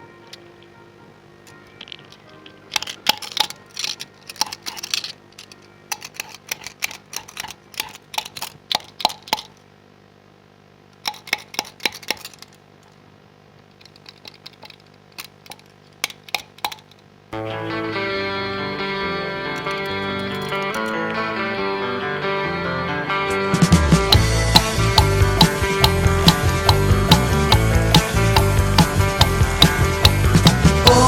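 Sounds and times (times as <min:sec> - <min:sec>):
music: 0:00.0 - 0:06.4, 0:17.4 - 0:31.0.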